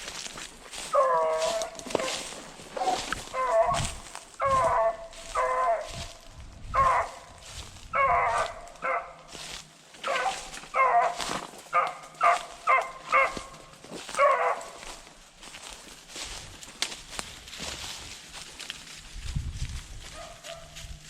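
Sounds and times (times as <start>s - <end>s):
hounds barking: 0.7s - 15.1s, 20.0s - 20.9s.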